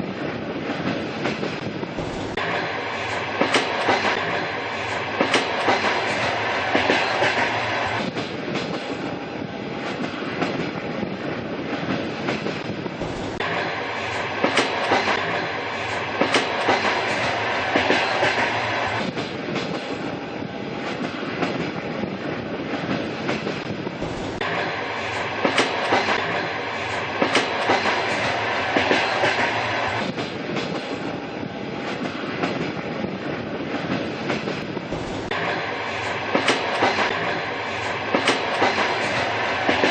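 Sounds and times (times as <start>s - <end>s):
train rumble: 0.0s - 39.9s
train wheels clickety-clack: 0.0s - 39.9s.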